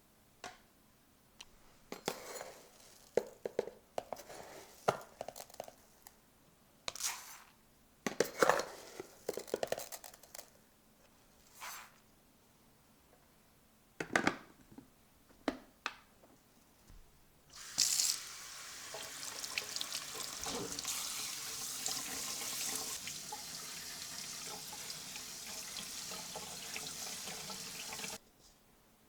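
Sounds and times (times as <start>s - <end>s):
tap water running into sink: 17.6s - 28.2s.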